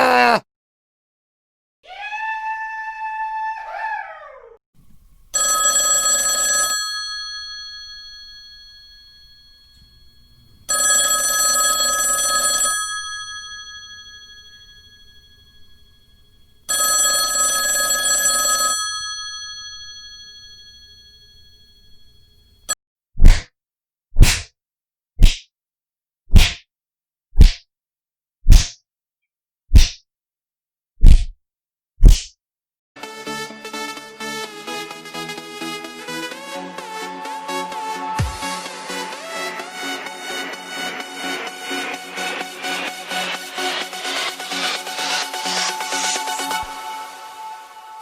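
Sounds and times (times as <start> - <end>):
old telephone bell ringing: 5.3 - 22.6.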